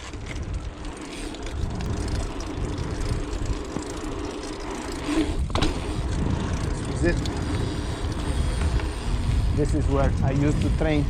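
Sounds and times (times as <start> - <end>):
bike tyre noise: 0.0 - 11.0
wind buffeting microphone: 0.0 - 11.0.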